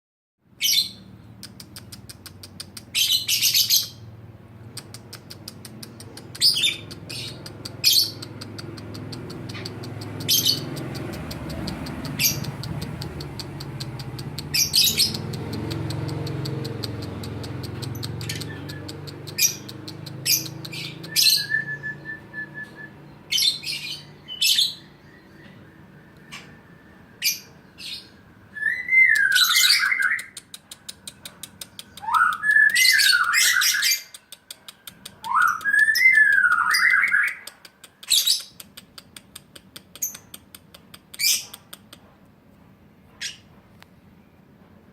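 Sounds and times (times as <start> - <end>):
lovebirds chirping and clicking: 0.6 - 21.9, 22.6 - 26.6, 27.2 - 42.1
lovebird warbling calls: 2.9 - 4.1, 6.2 - 10.8, 11.6 - 16.1, 16.8 - 21.6.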